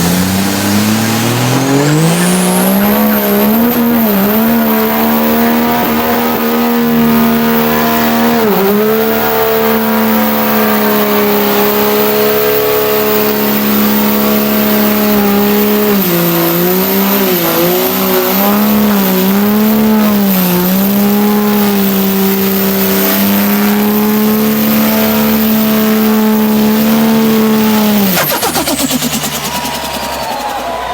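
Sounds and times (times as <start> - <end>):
rapid turbo flutter: 0.0 - 30.9
turbodiesel engine revving: 0.0 - 30.9
high turbo whistle: 22.8 - 30.9.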